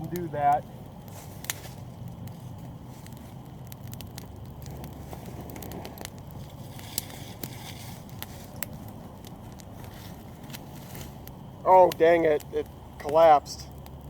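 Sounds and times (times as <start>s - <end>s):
campfire crackling: 0.0s - 14.0s
fire popping: 0.0s - 14.0s.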